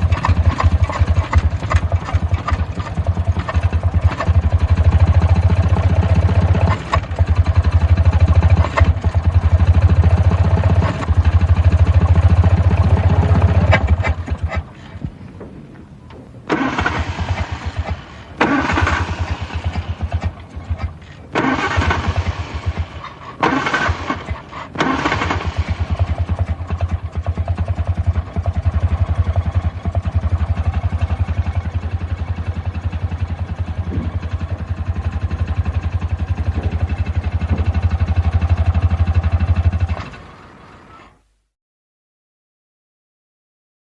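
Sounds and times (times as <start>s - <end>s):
engine cranking: 0.0s - 41.2s
car engine running: 25.8s - 39.9s.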